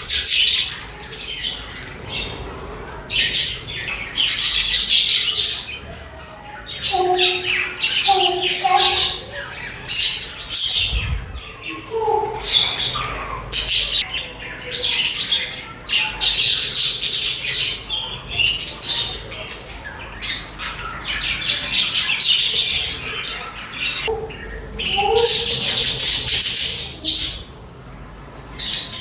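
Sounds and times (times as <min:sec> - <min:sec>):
budgerigars chirping and chattering: 0:00.0 - 0:29.0.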